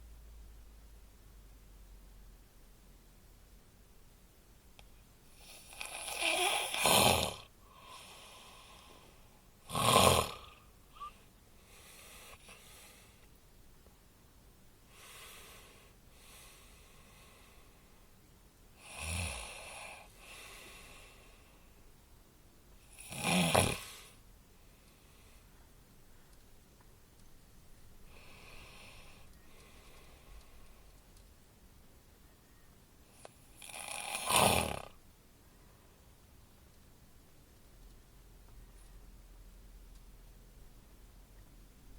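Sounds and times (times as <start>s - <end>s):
loud snores: 5.4s - 8.4s, 9.7s - 10.6s, 18.8s - 20.4s, 22.9s - 24.2s, 33.5s - 35.0s
faint breathing: 7.6s - 9.5s, 10.4s - 13.4s, 14.9s - 18.1s, 19.6s - 21.8s, 23.8s - 26.4s, 28.0s - 31.0s.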